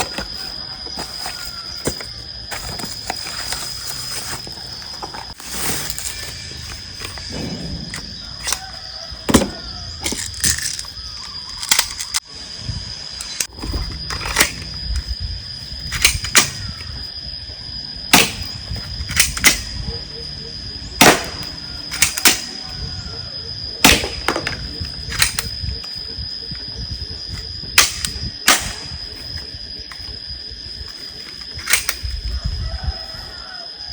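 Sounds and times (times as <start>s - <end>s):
steady high-pitched tone: 0.0s - 33.9s
air gun shots cracking: 21.0s - 21.4s, 27.8s - 29.0s.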